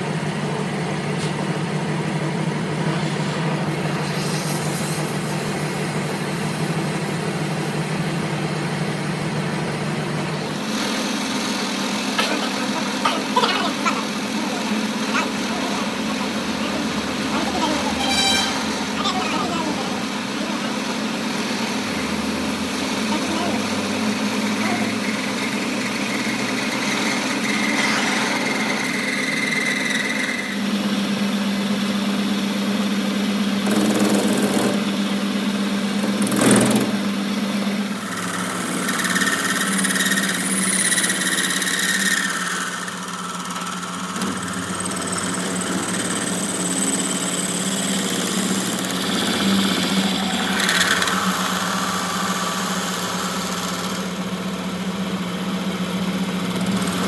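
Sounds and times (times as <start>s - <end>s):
machine humming: 0.0s - 33.9s
high-pitched whining: 4.2s - 30.8s.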